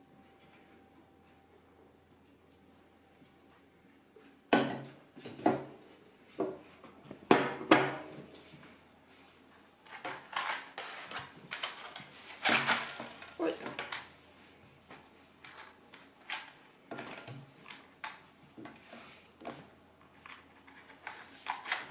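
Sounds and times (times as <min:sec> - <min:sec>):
dishes knocking and clinking: 0:04.5 - 0:05.8, 0:07.3 - 0:08.2.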